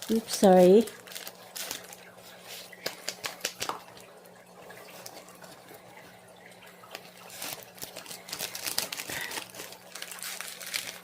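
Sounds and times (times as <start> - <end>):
packaging crinkling and rustling: 0.0 - 4.0, 6.8 - 11.0.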